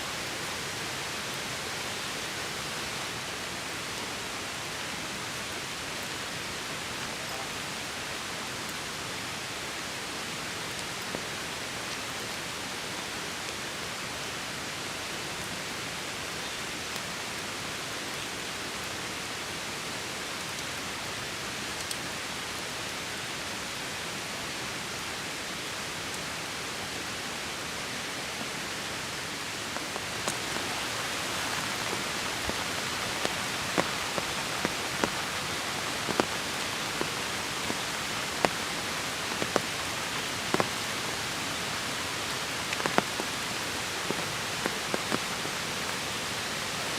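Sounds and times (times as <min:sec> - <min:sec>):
heavy rain hissing: 0:00.0 - 0:46.9
raindrops tapping close by: 0:28.1 - 0:46.9.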